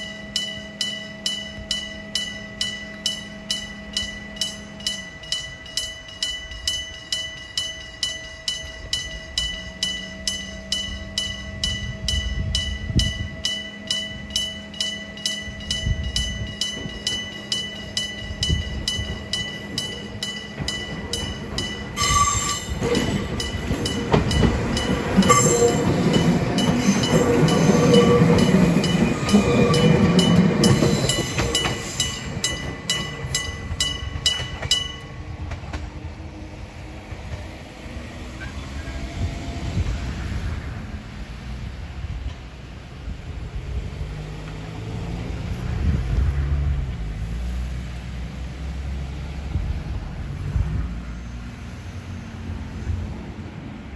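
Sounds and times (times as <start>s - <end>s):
level crossing bell ringing: 0.0s - 35.2s
train wheels rumbling and clattering: 0.0s - 53.9s.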